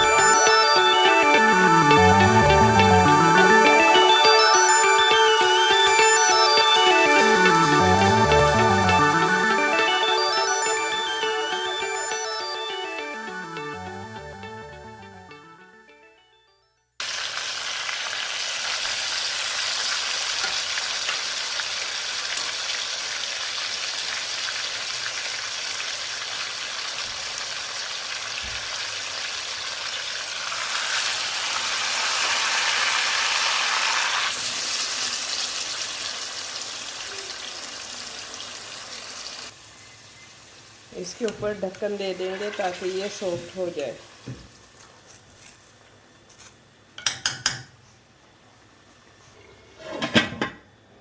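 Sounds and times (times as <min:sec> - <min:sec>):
background music: 0:00.0 - 0:16.7
food sizzling in a pan: 0:17.0 - 0:46.6.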